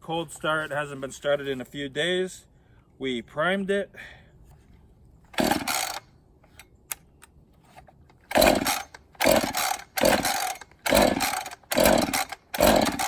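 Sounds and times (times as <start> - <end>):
chainsaw starter cord pulls: 5.4 - 6.0, 8.2 - 13.0
engine turning over: 8.3 - 13.0.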